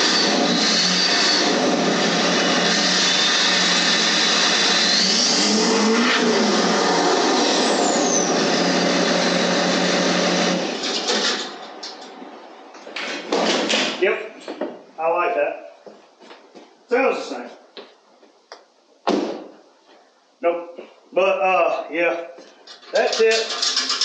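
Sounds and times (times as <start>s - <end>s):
engine running loudly: 0.0s - 10.7s.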